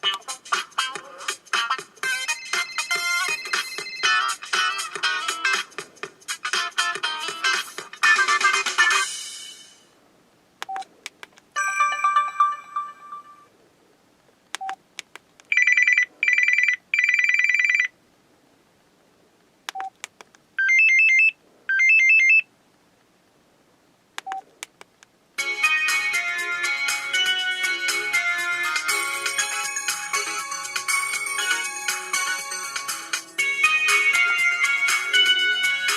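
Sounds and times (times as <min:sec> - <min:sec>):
phone ringtones: 0:11.6 - 0:13.5, 0:15.5 - 0:17.9, 0:20.6 - 0:22.4
click and beep: 0:14.6 - 0:14.8, 0:19.7 - 0:20.0, 0:24.2 - 0:24.5.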